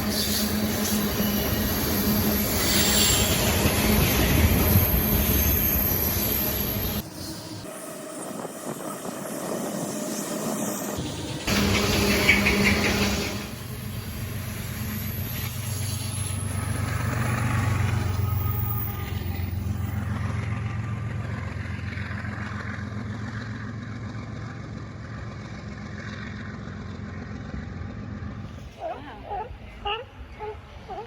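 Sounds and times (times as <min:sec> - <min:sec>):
diesel locomotive drone: 0:00.0 - 0:31.0.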